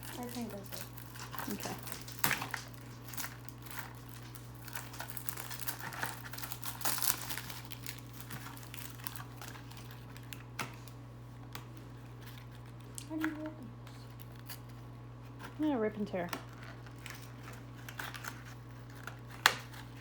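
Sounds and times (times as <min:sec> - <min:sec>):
candy packaging crinkling: 0:00.0 - 0:20.0.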